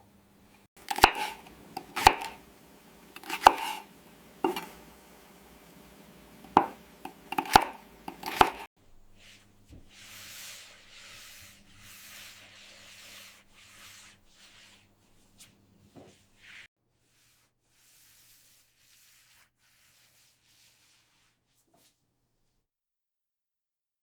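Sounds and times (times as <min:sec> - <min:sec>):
sharp knocks on hard surface: 0:06.5 - 0:08.6.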